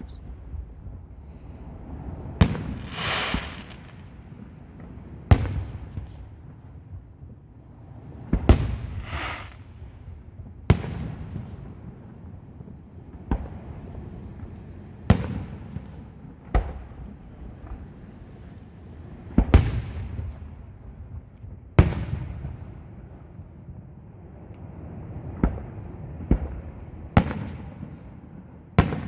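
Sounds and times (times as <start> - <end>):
firework hiss: 0.0 - 4.4, 8.3 - 10.1
firework shells bursting: 2.3 - 4.2, 8.3 - 10.1.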